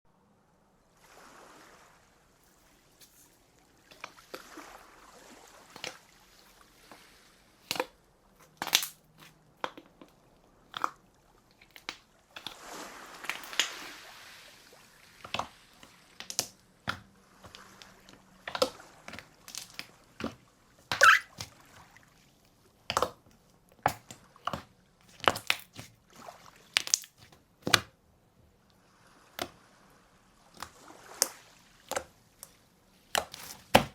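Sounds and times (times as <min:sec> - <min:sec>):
wet squishing: 0:05.7 - 0:07.0, 0:07.6 - 0:12.6, 0:15.2 - 0:21.8, 0:22.8 - 0:28.0, 0:30.6 - 0:33.9
slime crackling and popping: 0:08.6 - 0:09.0, 0:26.8 - 0:27.2.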